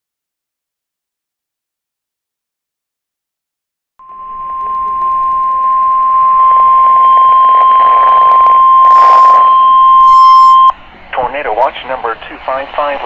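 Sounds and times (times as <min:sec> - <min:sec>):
high-pitched alarm beep: 0:04.0 - 0:10.8.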